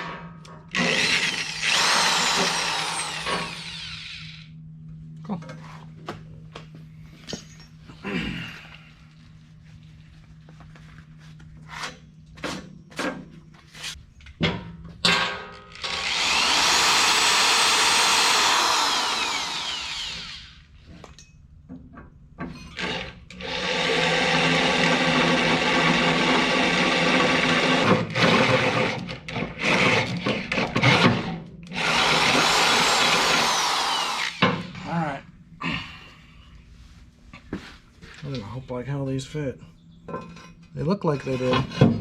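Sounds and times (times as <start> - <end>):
power drill boring into metal: 0.8 - 4.4, 15.8 - 20.6, 31.7 - 34.4
metal knocks and clanks: 40.1 - 42.0.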